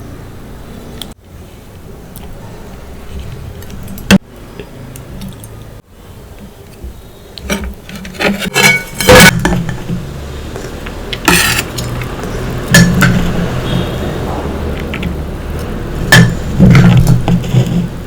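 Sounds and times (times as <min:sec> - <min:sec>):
tableware clinking: 0:08.4 - 0:10.1, 0:10.8 - 0:15.2.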